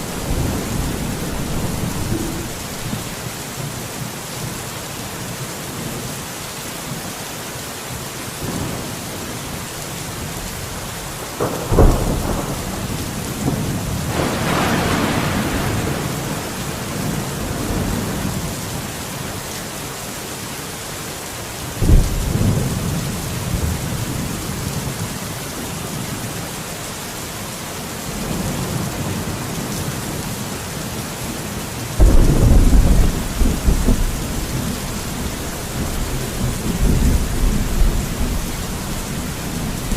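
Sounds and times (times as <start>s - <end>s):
sharp thunderclap: 0.0s - 3.1s, 11.4s - 18.0s, 32.0s - 39.9s
rolling thunder: 0.0s - 3.2s, 11.2s - 18.5s, 32.0s - 39.9s
steady rain: 0.0s - 39.9s.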